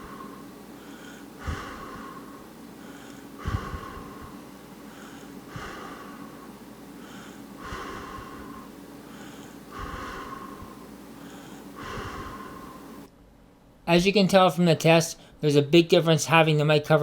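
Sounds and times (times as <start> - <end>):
breath blown into microphone: 0.0 - 13.1
low wind rumble: 3.4 - 4.5, 9.7 - 10.9, 11.8 - 13.0.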